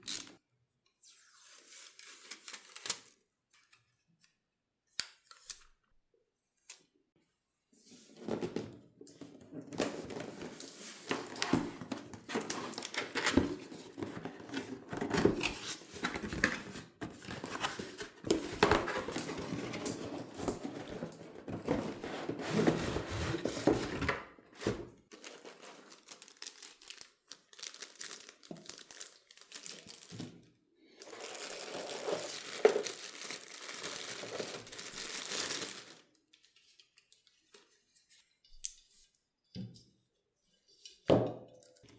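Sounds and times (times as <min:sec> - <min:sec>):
plastic packaging crinkling and tearing: 0:01.7 - 0:03.2, 0:09.9 - 0:24.0, 0:24.6 - 0:37.7.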